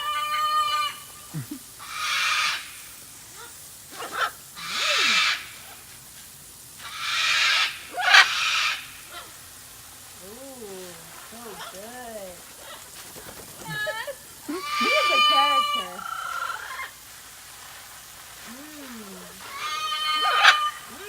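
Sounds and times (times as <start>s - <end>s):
parrot low calls: 0.0s - 5.9s, 6.8s - 9.4s, 13.8s - 17.0s, 19.4s - 21.0s.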